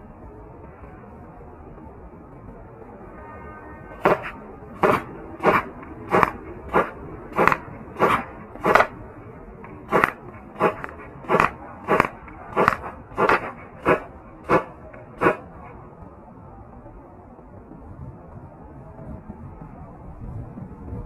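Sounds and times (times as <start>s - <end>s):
airsoft pistol shots: 4.0s - 8.9s.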